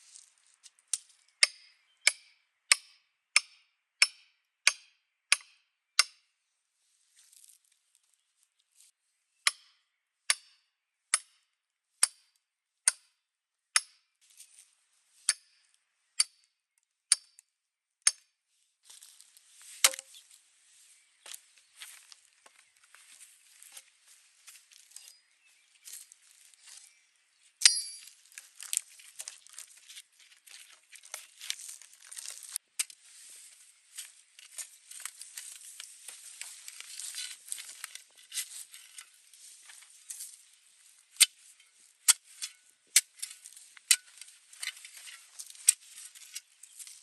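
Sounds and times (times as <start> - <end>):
wood chopping strikes: 19.8 - 20.1
rustling: 28.0 - 42.4, 43.3 - 47.0.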